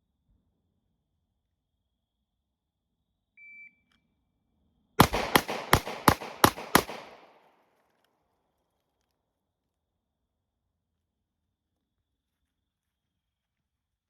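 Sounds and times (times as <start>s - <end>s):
handgun shots: 5.0s - 7.5s.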